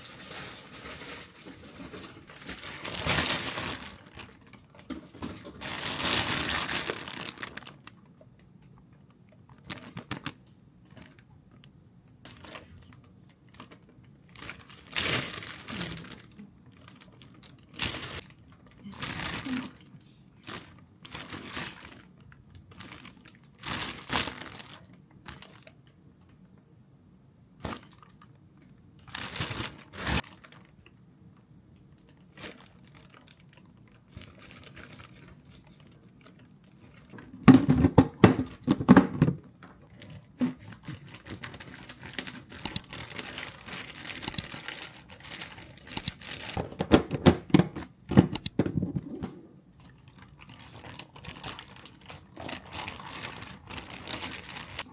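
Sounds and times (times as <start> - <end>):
plastic tearing: 0.0 - 8.1, 9.5 - 11.2, 12.2 - 19.8, 20.4 - 25.9, 29.0 - 30.8, 32.0 - 54.9
plastic packaging crinkling: 0.0 - 26.3, 27.6 - 46.9, 47.9 - 54.9.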